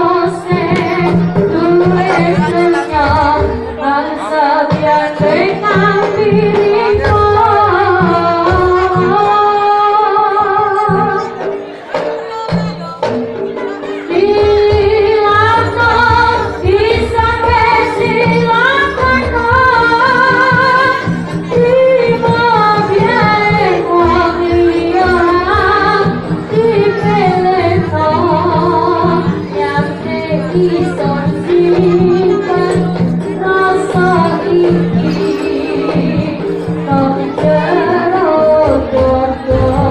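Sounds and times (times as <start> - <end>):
low rhythmic beat: 0.0 - 39.9
woman singing ornamented melody: 14.0 - 39.9.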